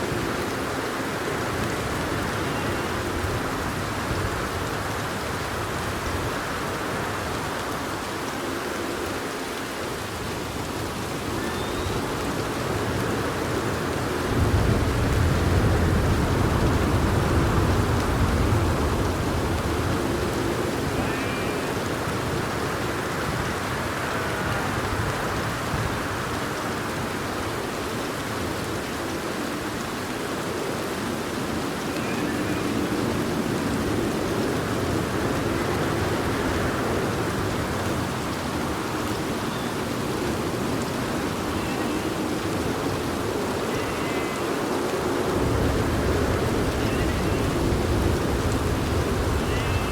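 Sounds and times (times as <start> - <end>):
steady rainfall: 0.0 - 49.9.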